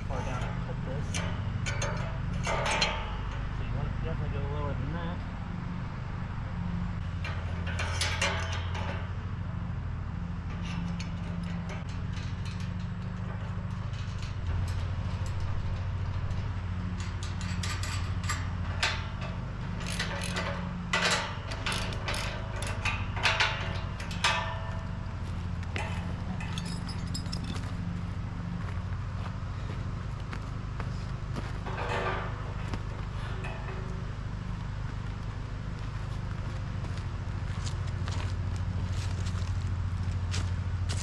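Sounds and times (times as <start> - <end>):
metal gate hardware clanking: 0.0 - 4.4, 7.0 - 9.4, 10.3 - 29.0, 31.3 - 35.8
steady low hum: 0.0 - 41.0.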